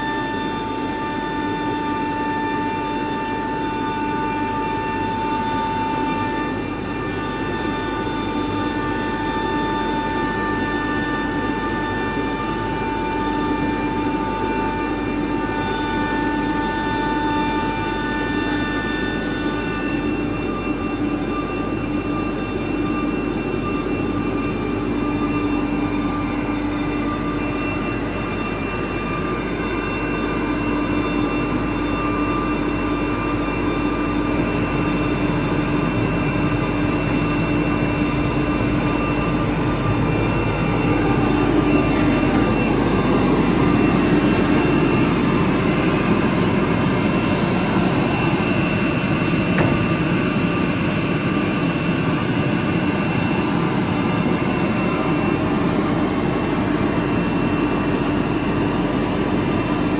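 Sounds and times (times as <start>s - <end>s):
cnc router whining: 0.0s - 59.9s.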